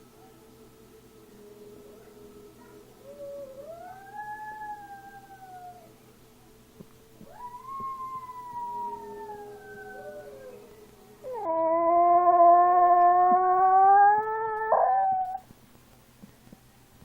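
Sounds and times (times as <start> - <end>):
pet howling: 1.9 - 6.0, 7.2 - 15.4.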